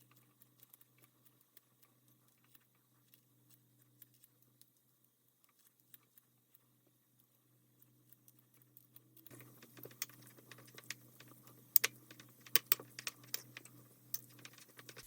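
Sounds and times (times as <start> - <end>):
faint steady hum: 0.0 - 15.0
sharp clicks and taps: 9.3 - 15.0.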